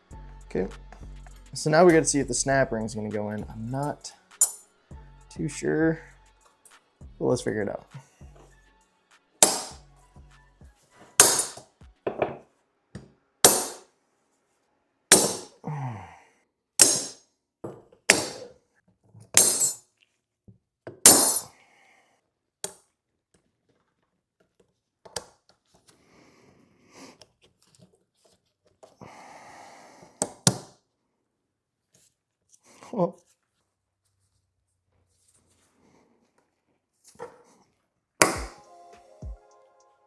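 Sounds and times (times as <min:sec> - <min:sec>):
metal clinks and knocks: 0:04.4 - 0:04.6, 0:19.4 - 0:19.8.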